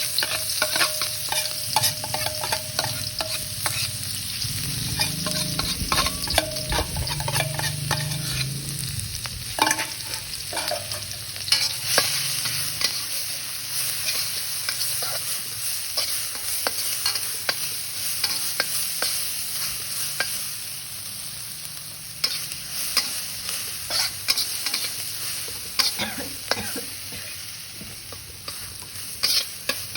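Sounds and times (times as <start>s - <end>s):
utensil scraping a pan: 0.0s - 15.4s, 23.9s - 25.0s, 28.5s - 29.9s
food sizzling in a pan: 0.0s - 29.9s.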